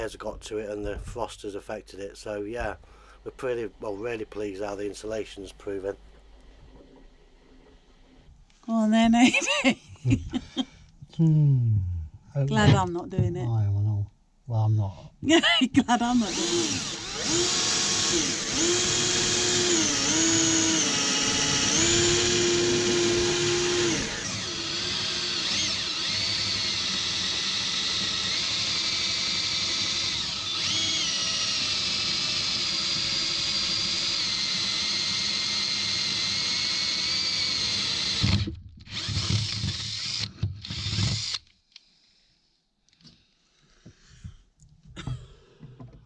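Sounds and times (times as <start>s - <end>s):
power tool motor whine: 16.2s - 41.5s.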